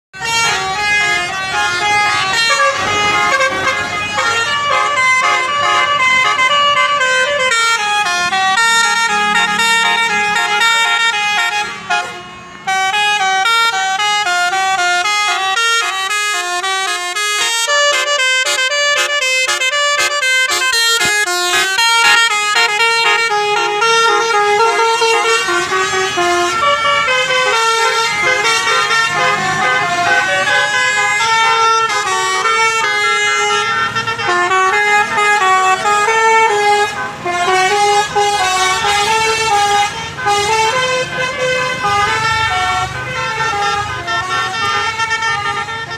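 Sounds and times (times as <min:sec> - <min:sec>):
musical bus horn melody: 0:00.1 - 0:45.9.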